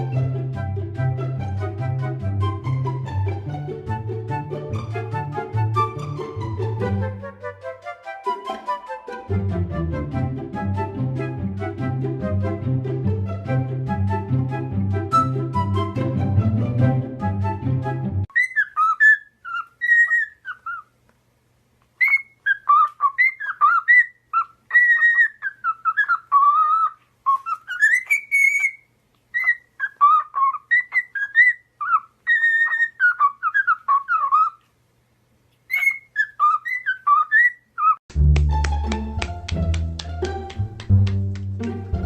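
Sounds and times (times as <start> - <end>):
parrot whistling and chirping: 18.3 - 20.9, 22.0 - 34.6, 35.7 - 38.0.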